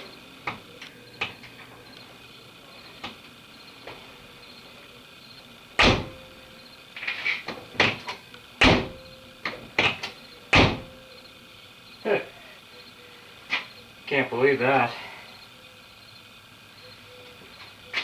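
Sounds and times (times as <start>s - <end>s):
car door slamming: 5.8s - 6.4s, 8.6s - 9.2s, 9.8s - 11.0s.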